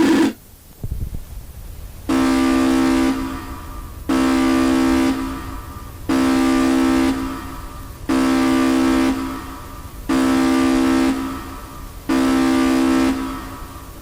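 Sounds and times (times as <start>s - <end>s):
buzzy alert tone: 0.0s - 0.4s.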